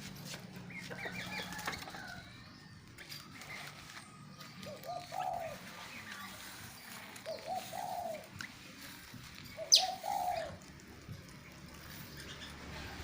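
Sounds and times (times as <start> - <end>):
small birds chirping: 0.1 - 13.0
dove cooing: 4.5 - 8.8, 9.4 - 10.8.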